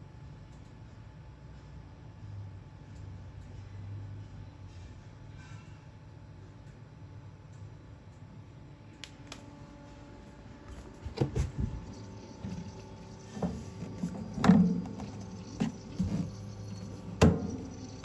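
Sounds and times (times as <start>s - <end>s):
fridge compressor humming: 9.5s - 18.0s.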